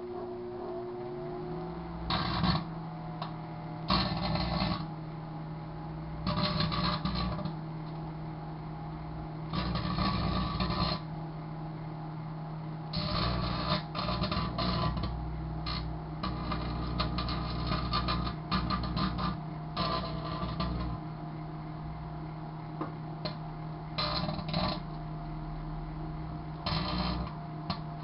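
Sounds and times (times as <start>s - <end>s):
microwave oven humming: 0.0s - 28.0s
crackling of electrical arcing: 2.0s - 4.9s, 6.2s - 7.6s, 9.5s - 11.1s, 13.0s - 21.0s, 24.0s - 25.0s, 26.6s - 28.0s.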